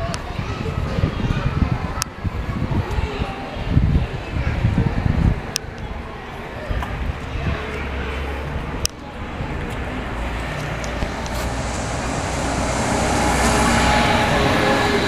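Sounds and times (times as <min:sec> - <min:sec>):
street traffic rumble and hiss: 0:00.0 - 0:15.0
vehicle approaching: 0:07.9 - 0:15.0.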